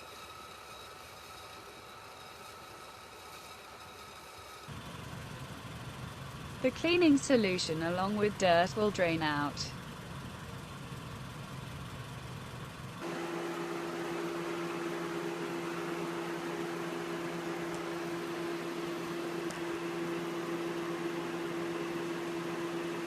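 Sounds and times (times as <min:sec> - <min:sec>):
car engine idling: 0:04.7 - 0:23.0
air conditioner hum and hiss: 0:06.6 - 0:09.8.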